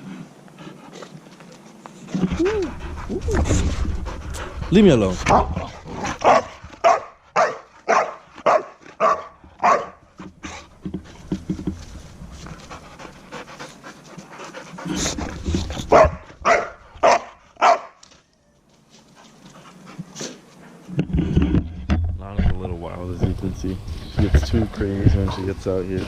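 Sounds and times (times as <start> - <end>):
dog panting hard: 2.1 - 6.9, 12.4 - 16.2, 24.6 - 25.6.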